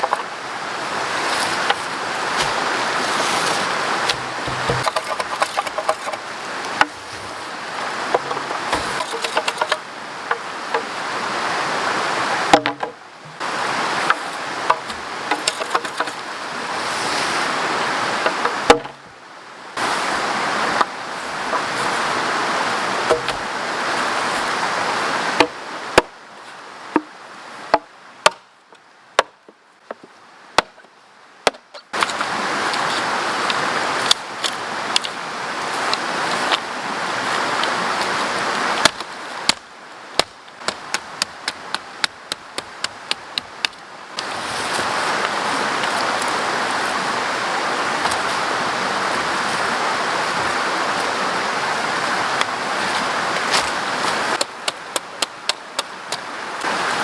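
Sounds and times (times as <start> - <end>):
river water rushing: 0.0 - 29.2, 31.1 - 57.0
sharp chopping knocks: 2.4 - 2.7, 4.0 - 6.2, 12.5 - 12.9, 23.1 - 23.5.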